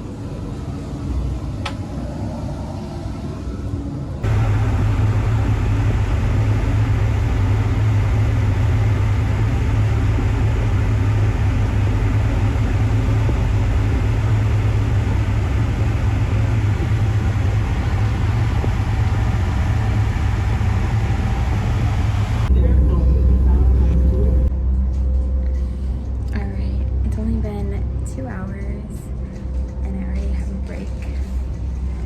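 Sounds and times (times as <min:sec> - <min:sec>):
boat engines droning: 0:04.2 - 0:24.5.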